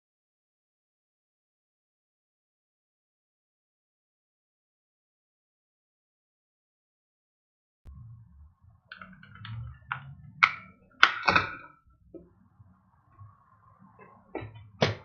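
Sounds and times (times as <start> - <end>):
plastic case clicks and knocks: 9.9 - 11.6.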